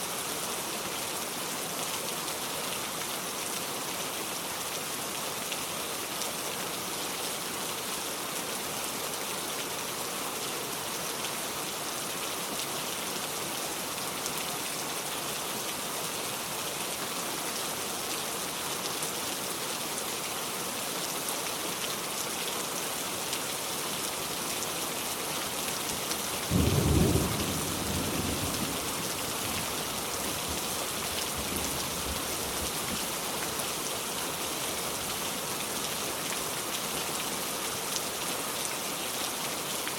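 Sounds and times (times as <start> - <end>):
heavy rain falling: 0.0 - 39.9
deep thunderclap rumbling: 26.5 - 28.8.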